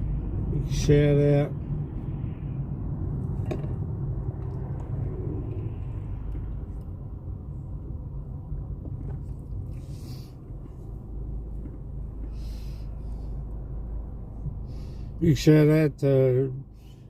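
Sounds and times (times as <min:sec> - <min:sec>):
car cabin rumble: 0:02.8 - 0:15.8.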